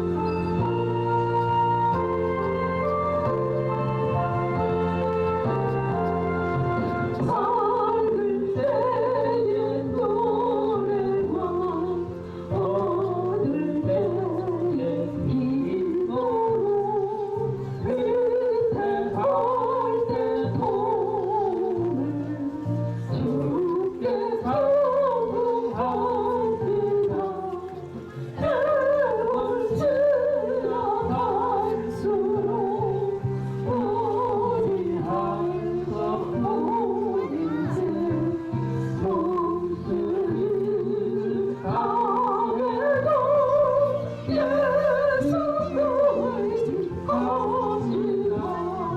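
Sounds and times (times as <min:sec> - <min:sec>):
backing chords: 0:00.0 - 0:09.4
held accompaniment chords: 0:00.0 - 0:48.9
person singing a hymn with vibrato: 0:00.0 - 0:48.9.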